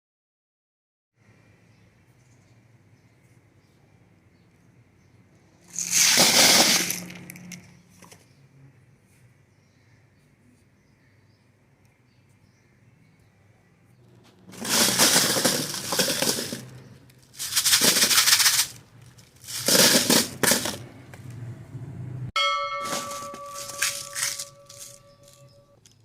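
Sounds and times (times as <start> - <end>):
grinder crunching hard candy: 5.7 - 7.5, 14.5 - 20.8
steady ringing tone: 22.4 - 25.8.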